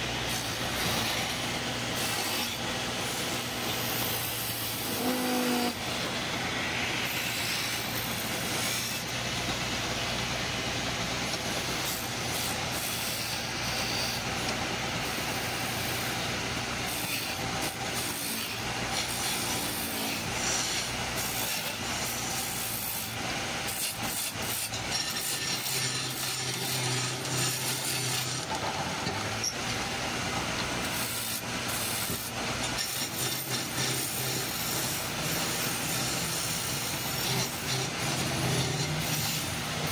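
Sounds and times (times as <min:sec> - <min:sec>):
wood lathe motor hum: 0:00.0 - 0:39.9
chisel scraping spinning wood: 0:30.5 - 0:39.9.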